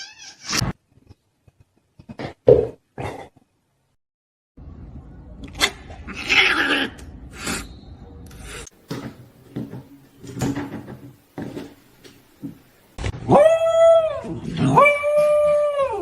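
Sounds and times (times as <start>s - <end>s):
wooden knocks and rubbing: 8.8s - 12.7s.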